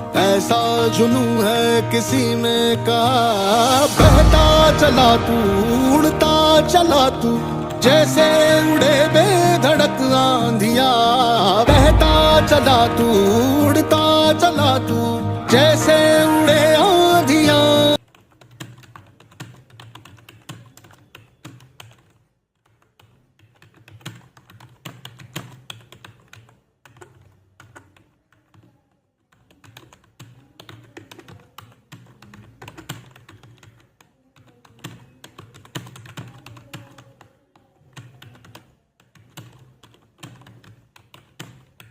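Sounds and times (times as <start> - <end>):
fast typing on keyboard: 15.8 - 41.9.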